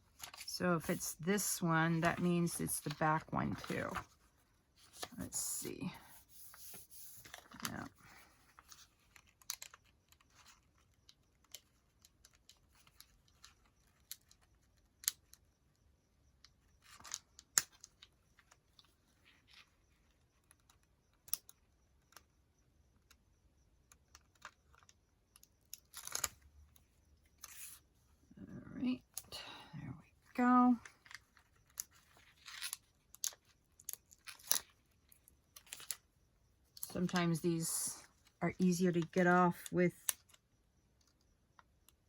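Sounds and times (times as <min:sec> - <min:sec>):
paper rustling and peeling: 0:00.0 - 0:09.4.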